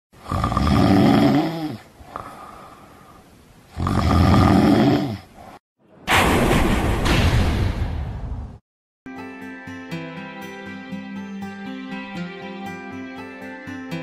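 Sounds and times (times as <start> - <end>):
person snoring: 0.2 - 5.4.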